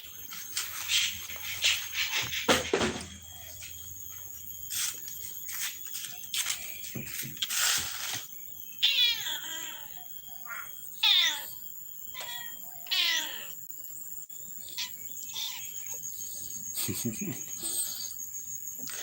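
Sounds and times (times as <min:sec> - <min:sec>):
angry cat meowing: 0:08.8 - 0:10.0, 0:11.0 - 0:11.5, 0:12.1 - 0:13.6.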